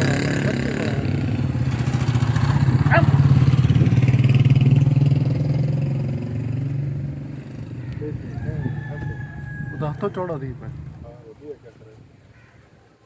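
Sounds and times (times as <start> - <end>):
engine running: 0.0 - 8.3.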